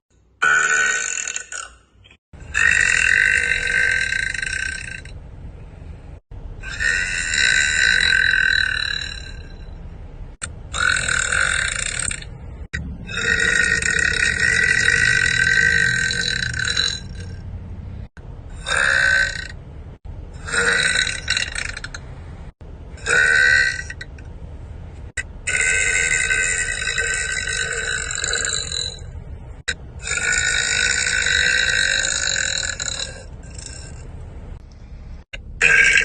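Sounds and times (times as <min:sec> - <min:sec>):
woman burping loudly: 0:00.4 - 0:01.8, 0:13.1 - 0:17.4.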